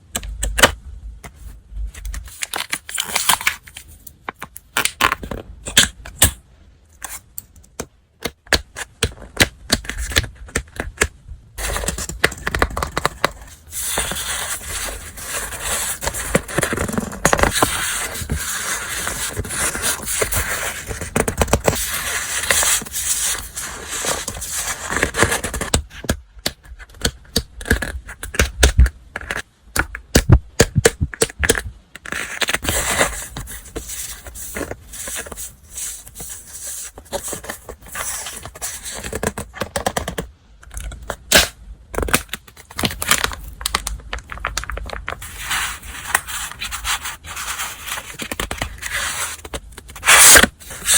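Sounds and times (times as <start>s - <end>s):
paper rustling and crinkling: 11.6s - 25.8s, 32.1s - 40.2s, 42.3s - 50.9s.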